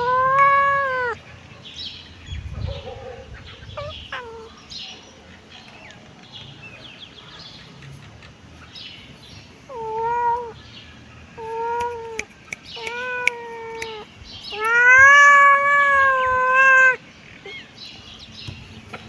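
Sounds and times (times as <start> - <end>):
kittens meowing: 0.0 - 1.2, 3.4 - 4.6, 9.7 - 10.6, 11.4 - 17.7.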